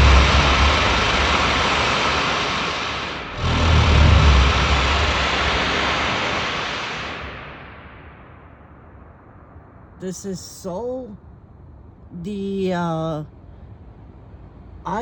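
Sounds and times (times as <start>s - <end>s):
loud rushing noise with rumble: 0.0s - 10.0s.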